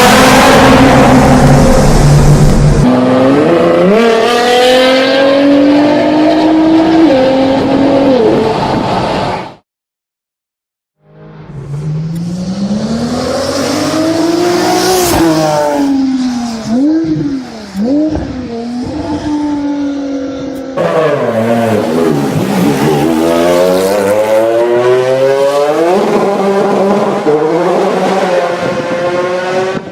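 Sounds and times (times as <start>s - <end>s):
car engine revving hard: 0.0s - 8.4s, 11.5s - 16.0s, 20.8s - 29.9s.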